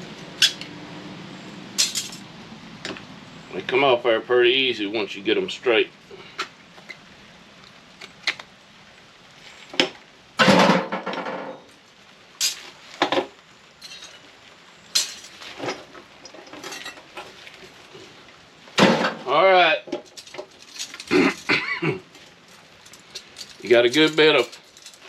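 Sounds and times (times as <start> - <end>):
metal parts clinking and clanking: 0.4 - 0.7, 1.8 - 2.2, 12.4 - 12.7, 13.8 - 14.2, 14.9 - 17.4, 19.9 - 25.0
metal rattle: 1.8 - 2.2, 15.0 - 17.4, 18.8 - 25.0.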